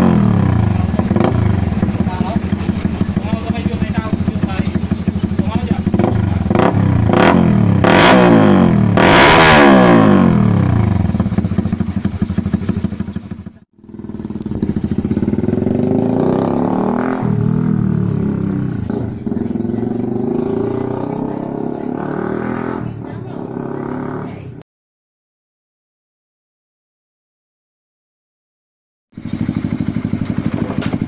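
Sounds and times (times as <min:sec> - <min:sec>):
motorcycle engine revving: 0:00.0 - 0:24.6, 0:29.1 - 0:31.0.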